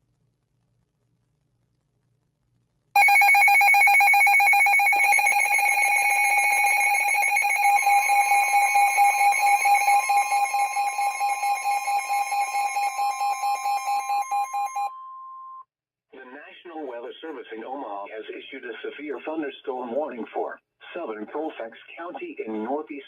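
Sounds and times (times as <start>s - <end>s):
electronic alert tone: 3.0s - 14.9s.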